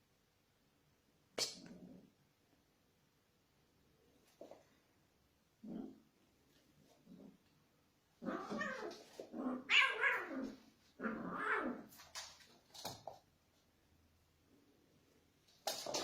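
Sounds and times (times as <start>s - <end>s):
cat crying: 8.2s - 11.9s.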